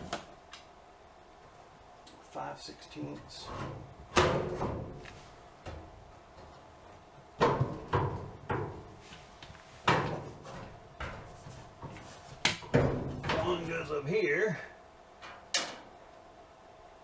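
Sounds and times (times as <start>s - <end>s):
metal parts knocking and clanking: 9.9s - 13.8s, 15.2s - 15.9s.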